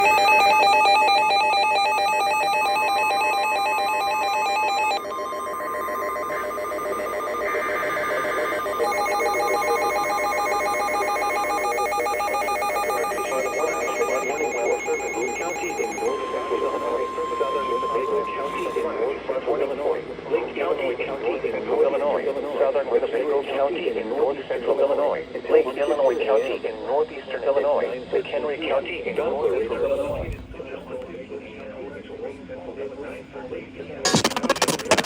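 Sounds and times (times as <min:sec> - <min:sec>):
warbling emergency alert tones: 0:00.0 - 0:19.3
steady electronic tones: 0:00.0 - 0:19.8.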